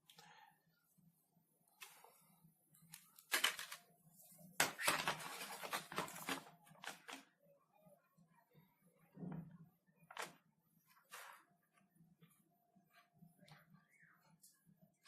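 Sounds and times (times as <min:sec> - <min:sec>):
packaging rustling and scraping: 0:04.6 - 0:07.2.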